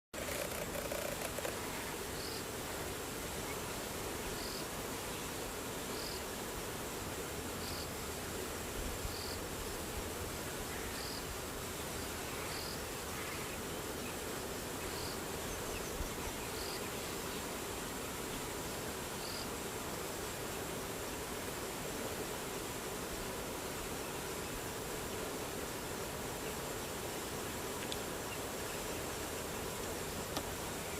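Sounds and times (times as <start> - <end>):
high insect chirp: 0.2 - 2.5
steady hiss: 0.2 - 30.9.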